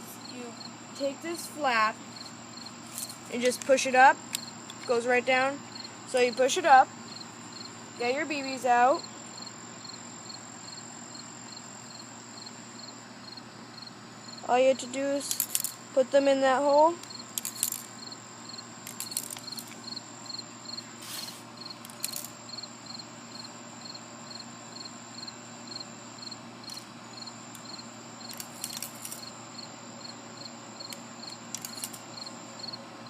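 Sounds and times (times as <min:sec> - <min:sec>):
steel bbs clicking and rattling: 0:02.9 - 0:05.0, 0:15.2 - 0:15.8, 0:17.0 - 0:17.9, 0:18.8 - 0:19.9, 0:21.8 - 0:22.4, 0:26.7 - 0:26.9, 0:27.6 - 0:29.3, 0:30.9 - 0:32.1.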